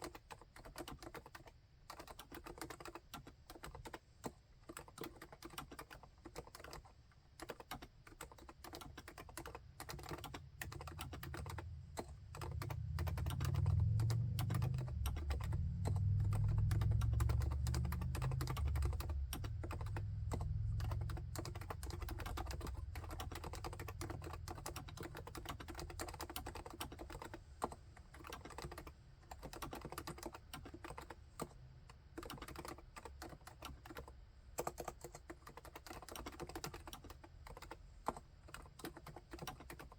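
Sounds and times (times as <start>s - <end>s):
fast typing on keyboard: 0.0s - 39.9s
low rumble: 10.8s - 23.4s.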